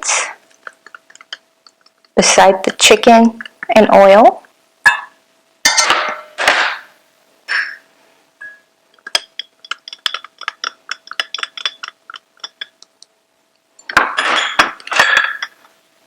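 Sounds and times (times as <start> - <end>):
spoon clinking against bowl: 8.4 - 12.8.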